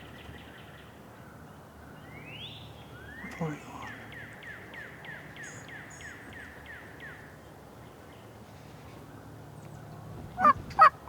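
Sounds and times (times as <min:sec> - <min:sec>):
turkey gobbling: 0:10.4 - 0:11.0.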